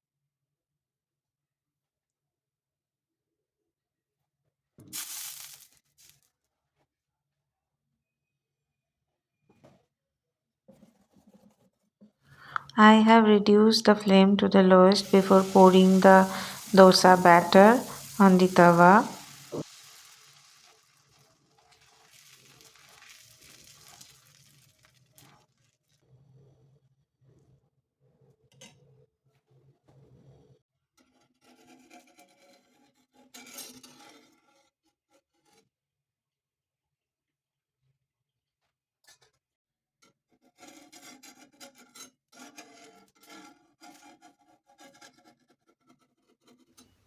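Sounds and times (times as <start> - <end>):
faint hiss: 14.6 - 20.4
utensil scraping iron griddle: 15.4 - 20.1.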